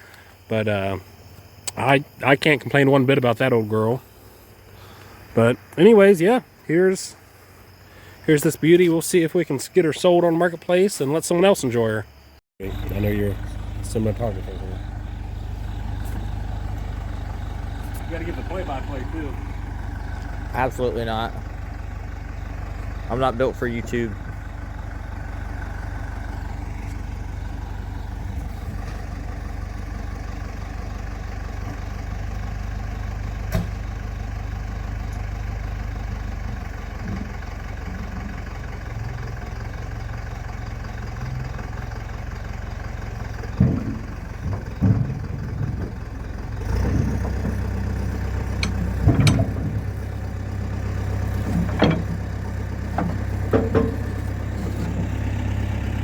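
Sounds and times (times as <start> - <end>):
engine droning: 0.0 - 56.0
knocks and clanks: 43.5 - 50.1, 51.0 - 55.4.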